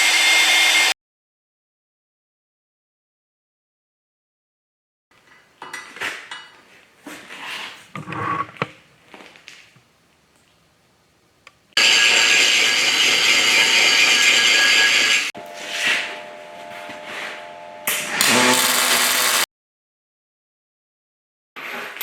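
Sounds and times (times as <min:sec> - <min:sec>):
arc welding crackle: 0:17.9 - 0:19.5.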